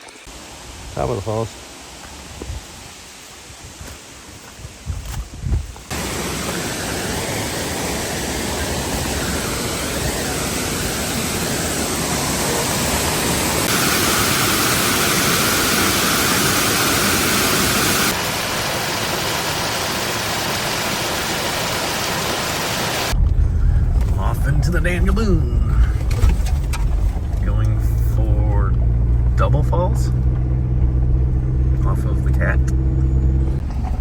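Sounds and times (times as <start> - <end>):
waterfall rushing: 5.9 - 23.2
low bumps: 23.1 - 34.0.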